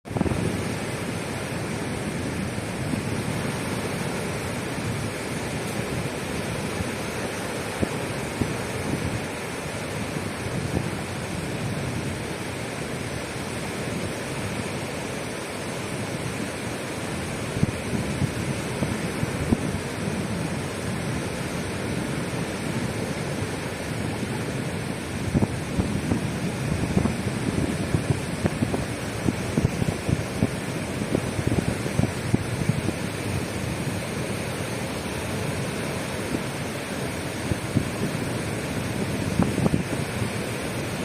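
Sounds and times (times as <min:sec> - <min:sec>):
waves washing onto shore: 0:00.1 - 0:41.0.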